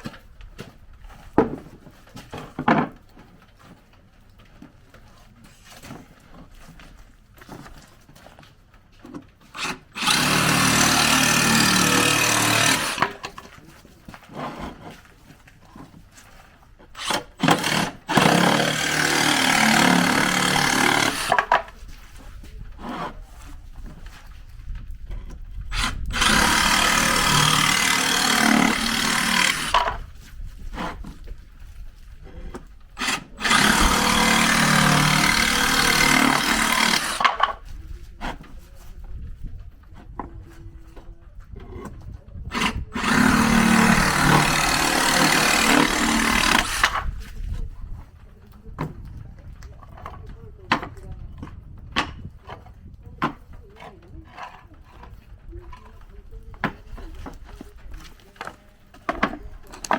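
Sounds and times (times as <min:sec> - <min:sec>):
reciprocating saw cutting plywood: 0:09.4 - 0:13.6, 0:16.8 - 0:21.9, 0:22.7 - 0:24.1, 0:25.6 - 0:31.3, 0:32.3 - 0:37.6, 0:42.5 - 0:47.6.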